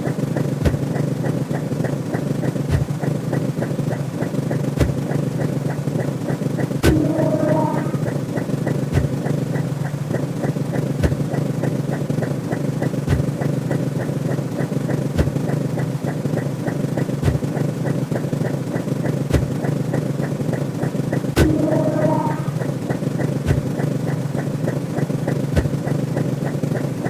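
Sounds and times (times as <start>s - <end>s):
steady low electronic hum: 6.6s - 11.6s, 21.2s - 23.4s.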